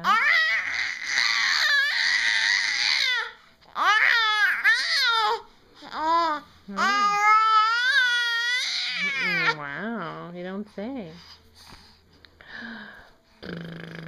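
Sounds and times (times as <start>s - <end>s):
infant babbling and squealing: 0.0s - 9.6s.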